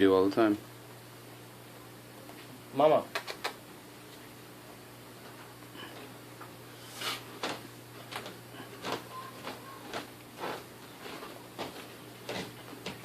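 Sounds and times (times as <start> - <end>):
cats scuffling: 6.9 - 13.0.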